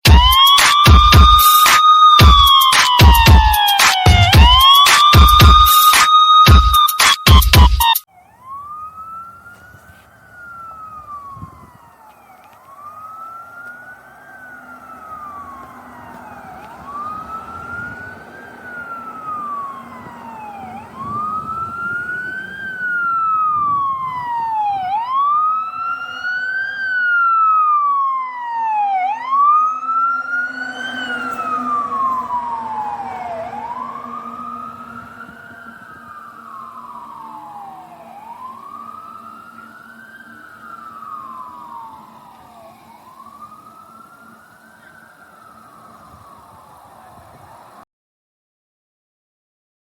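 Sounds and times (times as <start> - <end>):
fire engine siren wailing: 0.0 - 47.9
truck engine running: 12.7 - 27.4.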